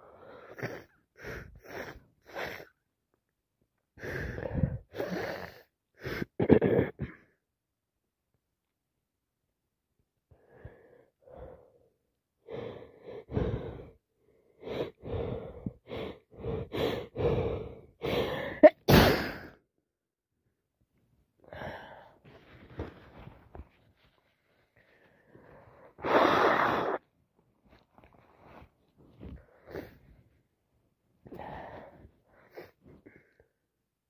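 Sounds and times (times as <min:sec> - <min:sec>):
woman gasping breaths: 0:12.5 - 0:18.7
woman sniffling: 0:18.0 - 0:19.6
woman sneezing: 0:18.6 - 0:19.5.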